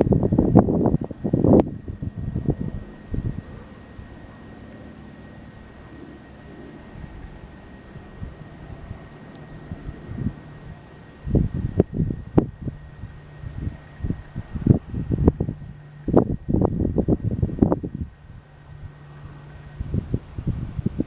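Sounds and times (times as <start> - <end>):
high-pitched insect chorus: 0.0 - 21.0.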